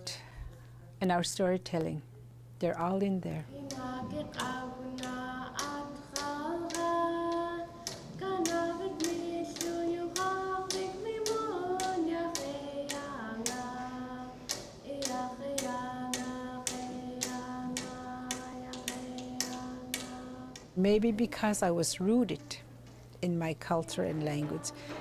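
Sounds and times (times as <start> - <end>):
voices singing a chant: 3.5 - 21.4.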